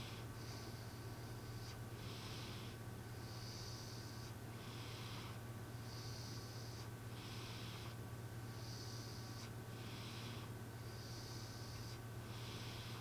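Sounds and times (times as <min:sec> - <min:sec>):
cat snoring: 0:00.0 - 0:13.0
steady low hum: 0:00.0 - 0:13.0.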